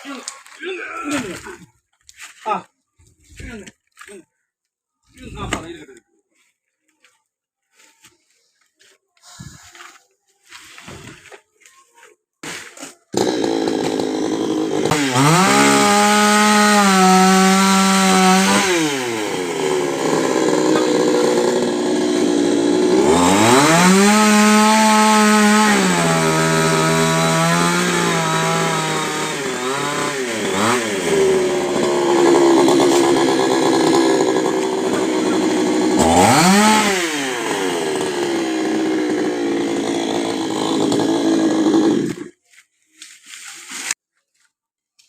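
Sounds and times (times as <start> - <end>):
chainsaw revving: 13.1 - 42.4.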